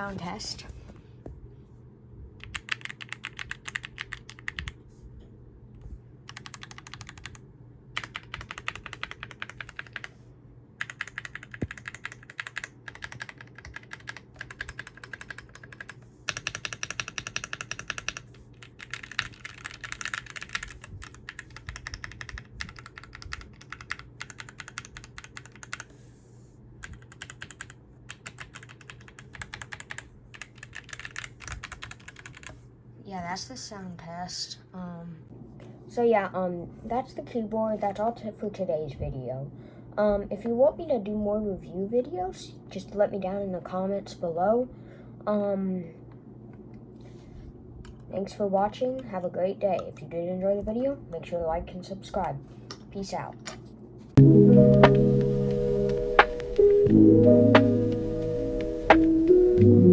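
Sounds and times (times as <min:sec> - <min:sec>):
mechanical keyboard typing: 0:02.4 - 0:04.8, 0:06.3 - 0:07.4, 0:08.0 - 0:10.1, 0:10.8 - 0:25.9, 0:26.8 - 0:32.5.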